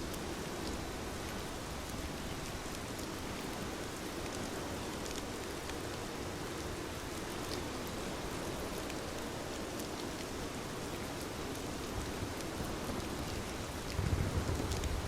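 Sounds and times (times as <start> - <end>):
steady rain falling: 0.0 - 15.0
low rumble of thunder: 13.9 - 15.0.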